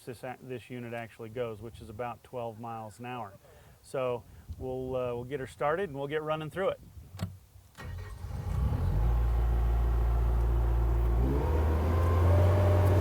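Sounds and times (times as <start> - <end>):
diesel engine starting and idling: 7.8 - 13.0.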